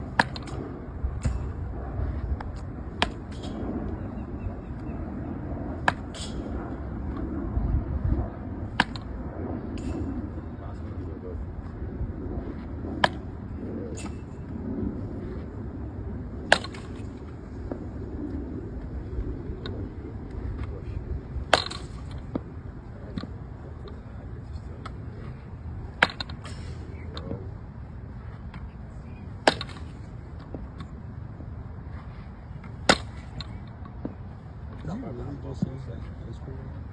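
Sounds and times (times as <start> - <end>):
low rumble: 0.0 - 36.9
bat hitting balls: 0.1 - 4.0, 5.8 - 7.2, 8.6 - 10.4, 12.5 - 14.5, 16.4 - 17.8, 21.4 - 22.5, 25.9 - 27.3, 29.3 - 31.0, 32.6 - 34.8.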